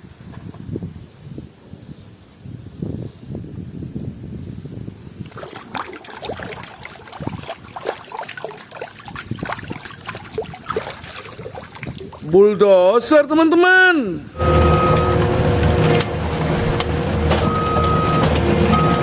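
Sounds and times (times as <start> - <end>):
water splashing and dripping: 5.2 - 12.4.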